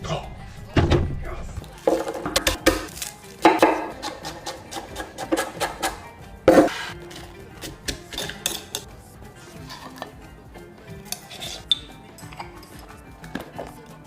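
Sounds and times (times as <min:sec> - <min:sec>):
background music: 0:00.0 - 0:14.0
utensils and dishes clattering: 0:01.6 - 0:08.9, 0:09.6 - 0:10.2, 0:11.0 - 0:14.0.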